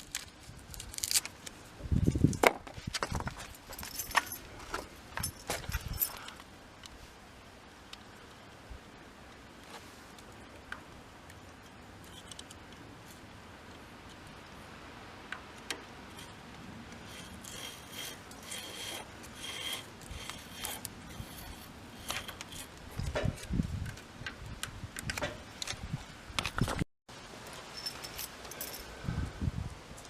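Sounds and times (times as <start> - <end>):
hand tool rubbing and scraping: 16.0 - 23.4.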